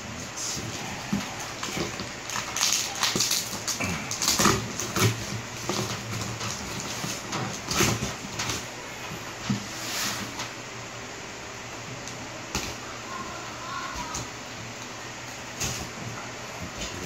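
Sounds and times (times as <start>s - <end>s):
cardboard and paper rustling: 0.4s - 10.6s
packaging crinkling: 1.1s - 8.7s.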